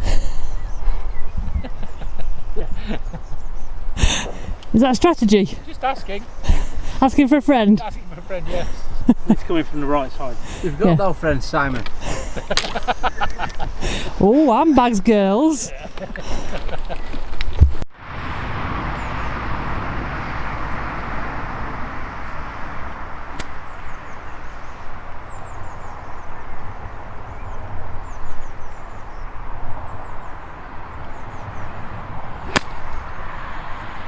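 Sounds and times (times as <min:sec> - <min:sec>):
small birds chirping: 0:00.0 - 0:34.0
rushing background rumble: 0:17.4 - 0:34.0.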